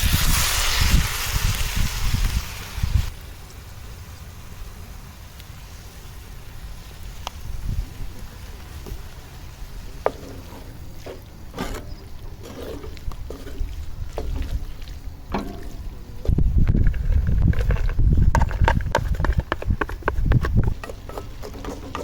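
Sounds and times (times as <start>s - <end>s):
wind buffeting microphone: 0.0s - 3.2s, 7.3s - 9.0s, 13.0s - 22.0s.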